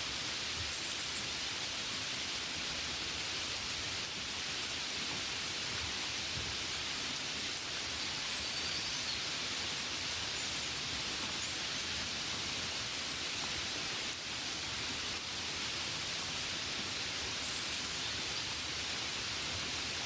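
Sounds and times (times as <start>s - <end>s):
steady rain: 0.0s - 20.0s.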